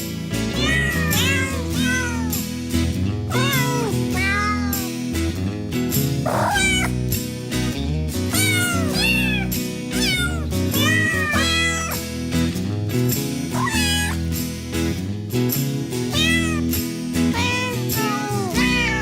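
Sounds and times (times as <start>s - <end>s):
background music low notes: 0.0s - 19.0s
cat meowing: 0.6s - 2.4s, 3.3s - 5.0s, 6.3s - 7.0s, 8.3s - 12.0s, 13.5s - 14.2s, 16.1s - 16.7s, 17.3s - 19.0s.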